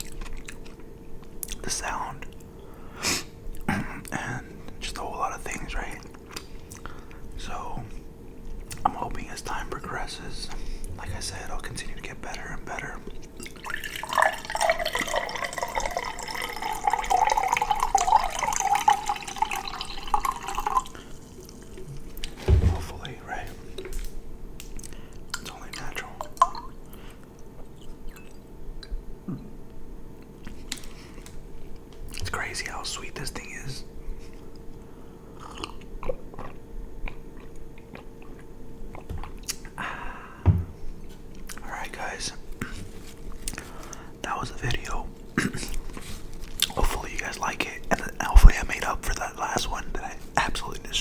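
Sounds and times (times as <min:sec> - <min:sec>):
person chewing food: 0:00.0 - 0:01.6, 0:35.4 - 0:39.8
liquid trickling and gurgling: 0:13.3 - 0:23.0.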